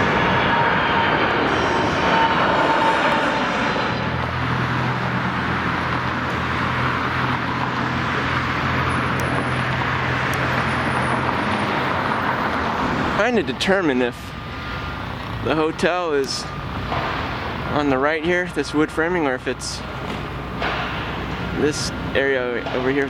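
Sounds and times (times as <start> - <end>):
low engine hum: 0.0 - 13.2
jet aircraft roar and whine: 0.0 - 23.0
outdoor background noise: 0.0 - 23.0.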